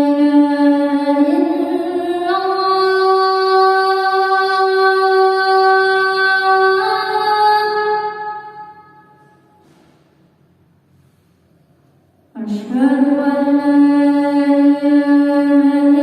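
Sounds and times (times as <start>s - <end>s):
boy chanting call to prayer: 0.0s - 8.8s, 12.4s - 16.0s.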